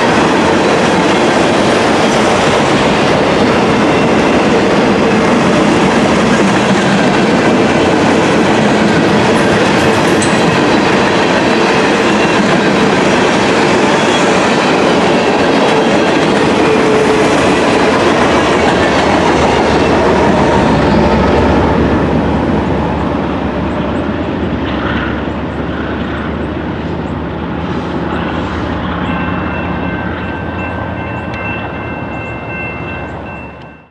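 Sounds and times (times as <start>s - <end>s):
train rumbling past: 0.0s - 33.9s.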